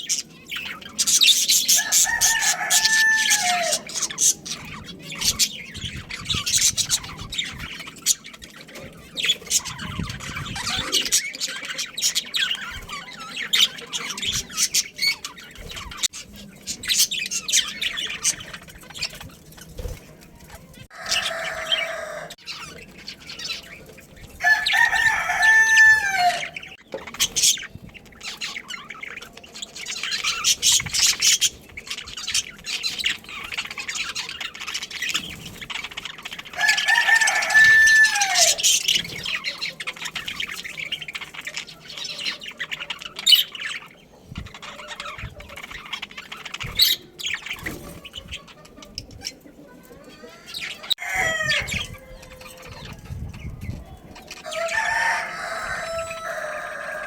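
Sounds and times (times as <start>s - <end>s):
budgerigars chirping: 0.0s - 20.0s, 20.9s - 49.4s
rooster crowing: 1.7s - 4.0s, 20.9s - 22.4s, 24.4s - 26.7s, 36.6s - 38.6s, 50.2s - 52.7s, 54.4s - 57.0s.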